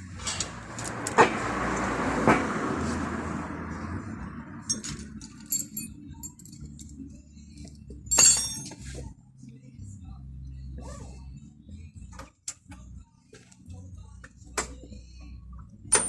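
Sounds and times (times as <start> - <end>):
metal clinking: 4.6 - 7.0, 8.1 - 8.9.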